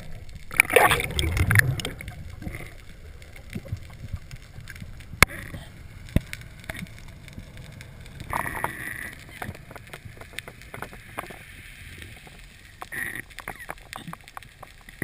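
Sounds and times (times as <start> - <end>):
underwater water rush: 0.0 - 15.0
underwater clicks and knocks: 0.5 - 7.5.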